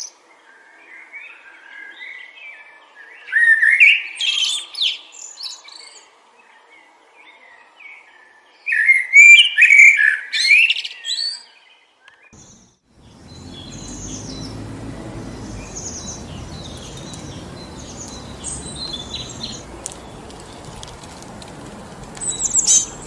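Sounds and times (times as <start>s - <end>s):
faint high bird chirps: 12.4s - 20.8s, 22.1s - 23.0s
songbird singing: 12.4s - 23.0s.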